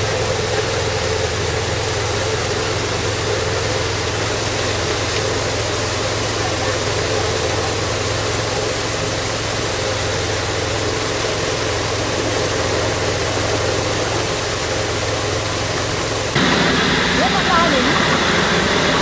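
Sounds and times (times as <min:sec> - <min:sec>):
threshing machine running: 0:10.7 - 0:19.0
low hum: 0:16.4 - 0:19.0.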